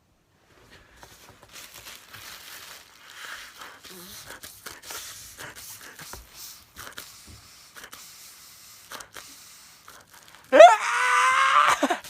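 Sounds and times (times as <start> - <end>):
faint hissing: 0.0 - 10.6
soft clicks and rustles: 0.4 - 4.8.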